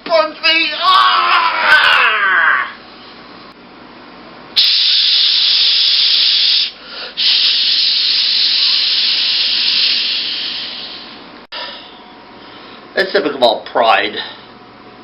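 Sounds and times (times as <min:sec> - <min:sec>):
steam-like hiss: 0:04.6 - 0:11.2.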